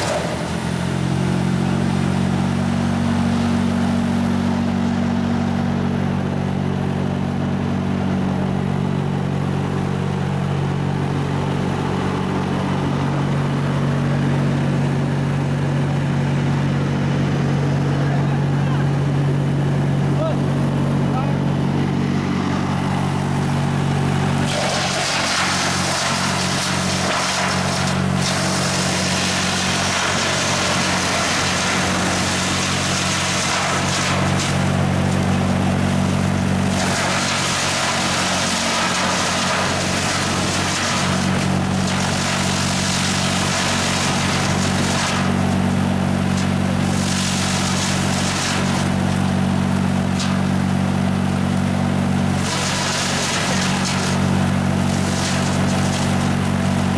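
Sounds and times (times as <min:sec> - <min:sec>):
diesel engine running: 0:00.0 - 0:56.9
wood chipper grinding: 0:00.0 - 0:56.9.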